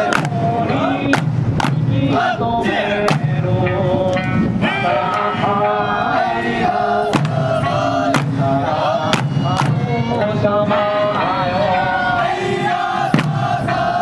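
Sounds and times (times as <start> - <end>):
group of voices singing and chanting: 0.0 - 14.0
sharp drum strikes: 3.1 - 3.6, 7.1 - 9.9, 13.1 - 13.7.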